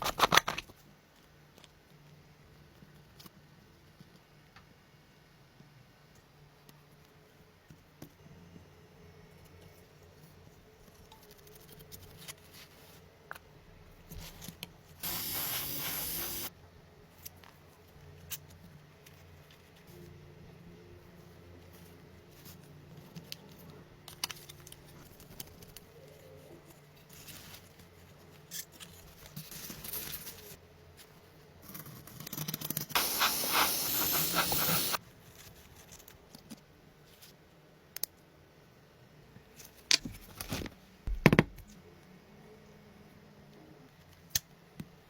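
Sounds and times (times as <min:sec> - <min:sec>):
spray hissing: 0:15.0 - 0:16.5, 0:33.0 - 0:35.0.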